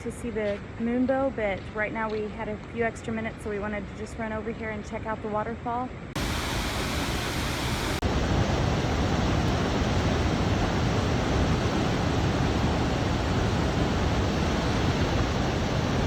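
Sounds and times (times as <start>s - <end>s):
waterfall roaring: 6.2s - 16.0s.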